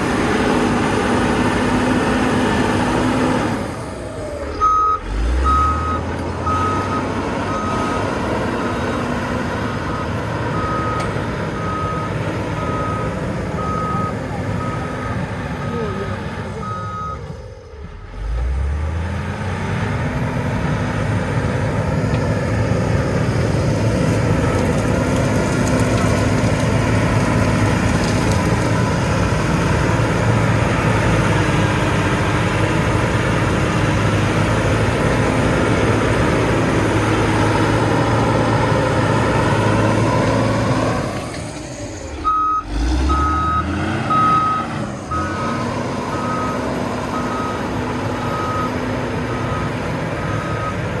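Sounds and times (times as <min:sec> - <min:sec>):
heavy vehicle engine revving: 0:00.0 - 0:51.0
reversing alarm beeping: 0:04.6 - 0:08.0, 0:09.8 - 0:15.8, 0:16.6 - 0:17.3, 0:42.2 - 0:48.8, 0:49.4 - 0:50.9.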